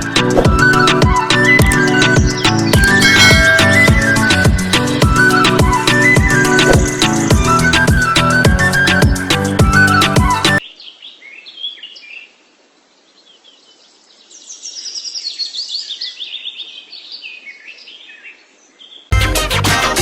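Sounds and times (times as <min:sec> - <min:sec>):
small birds chirping: 0:00.0 - 0:08.1, 0:13.0 - 0:19.1
music: 0:00.0 - 0:10.6, 0:19.1 - 0:20.0.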